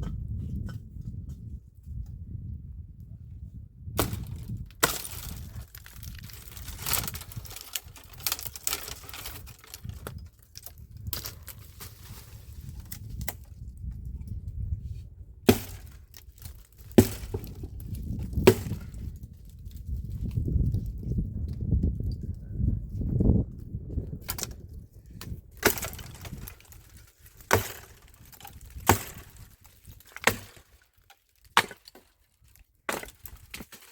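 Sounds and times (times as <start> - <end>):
sharp cracks and snaps: 4.0 - 11.6.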